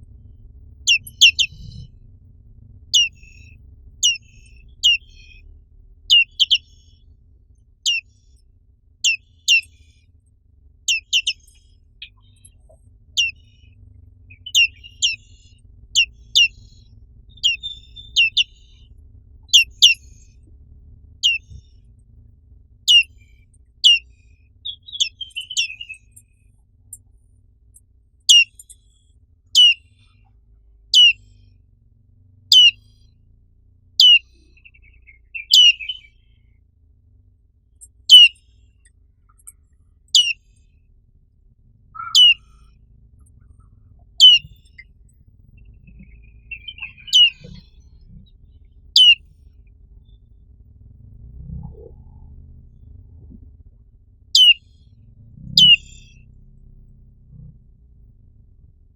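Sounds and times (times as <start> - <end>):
bird twittering: 0.8 - 1.9, 2.9 - 5.4, 6.1 - 7.0, 7.8 - 8.3, 9.0 - 9.8, 10.9 - 18.9, 19.5 - 20.3, 21.2 - 21.8, 22.8 - 26.2, 28.3 - 28.8, 29.5 - 30.1, 30.9 - 31.3, 32.5 - 32.9, 34.0 - 36.3, 37.8 - 38.4, 39.3 - 40.4, 42.0 - 42.8, 43.6 - 49.2, 51.6 - 52.3, 54.3 - 54.7, 55.5 - 56.2
bird whistling calls: 0.9 - 1.9, 2.9 - 5.4, 6.1 - 6.9, 7.9 - 8.2, 9.0 - 9.8, 10.9 - 12.5, 13.2 - 13.7, 14.3 - 15.4, 16.0 - 16.8, 17.4 - 18.9, 19.5 - 20.2, 21.2 - 21.7, 22.9 - 24.1, 24.7 - 26.2, 28.3 - 28.8, 29.6 - 29.9, 30.9 - 31.2, 32.5 - 32.8, 34.0 - 36.2, 38.1 - 38.4, 40.1 - 40.4, 42.0 - 42.6, 44.2 - 44.8, 45.5 - 47.9, 49.0 - 49.2, 54.4 - 54.6, 55.6 - 56.2.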